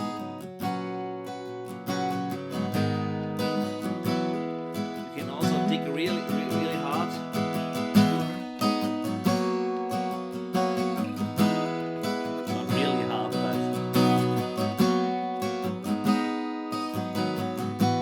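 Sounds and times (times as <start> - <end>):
acoustic guitar picked: 0.0 - 18.0.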